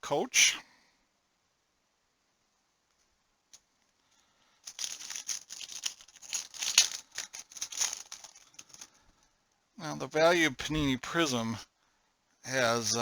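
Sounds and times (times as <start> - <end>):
plastic wrapper tearing and crinkling: 4.7 - 8.9.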